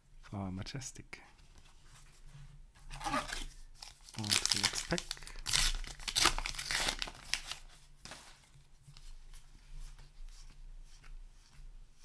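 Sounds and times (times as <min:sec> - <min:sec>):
paper wrapper tearing and crinkling: 0:03.0 - 0:08.3.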